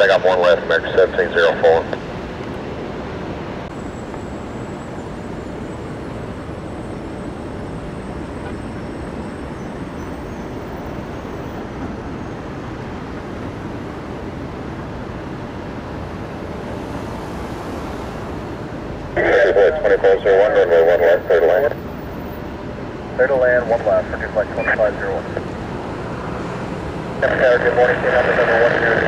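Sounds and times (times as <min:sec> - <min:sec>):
faint high whine: 0:00.0 - 0:29.0
jet engines rumbling: 0:00.0 - 0:29.0.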